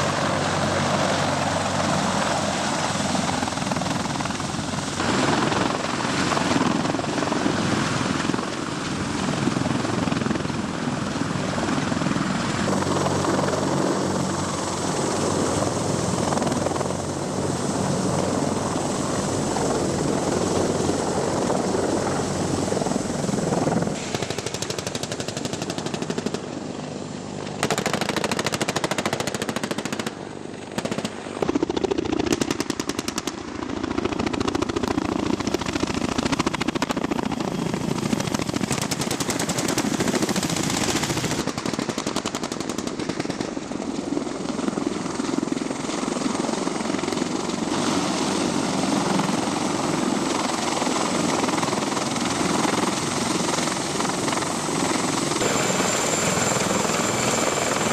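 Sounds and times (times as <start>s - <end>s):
helicopter rotor and turbine: 0.0s - 57.9s
automatic gunfire: 27.6s - 30.1s, 30.8s - 31.2s.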